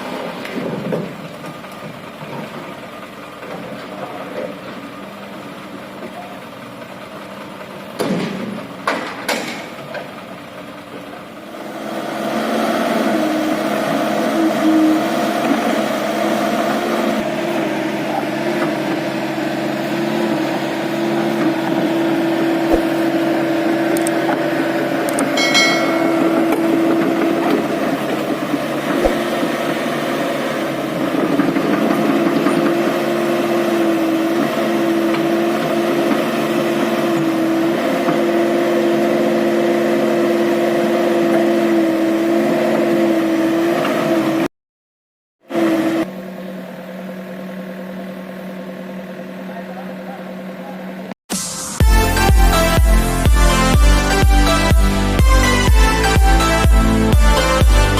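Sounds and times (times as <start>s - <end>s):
heavy diesel engine running: 0.0s - 44.5s, 45.6s - 57.9s
high-pitched squeal: 12.5s - 17.4s, 20.3s - 30.8s.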